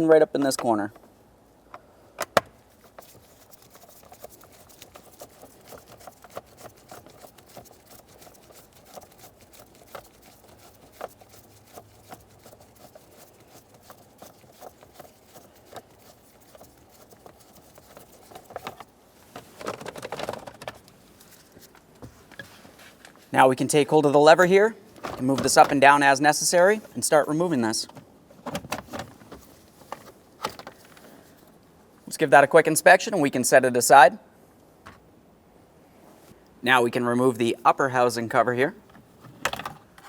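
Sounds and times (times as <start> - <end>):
rustling and scraping: 2.7 - 23.4, 24.0 - 31.6, 36.0 - 36.4.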